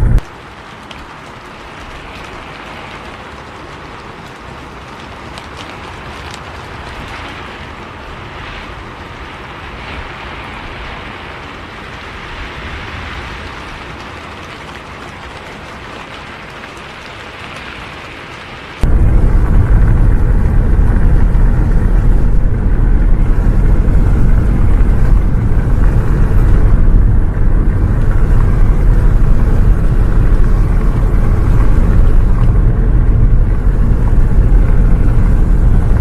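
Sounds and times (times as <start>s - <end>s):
bus engine rumble: 0.0s - 0.2s, 18.8s - 36.0s
rain hissing: 0.0s - 36.0s
raindrop ticks: 0.0s - 36.0s.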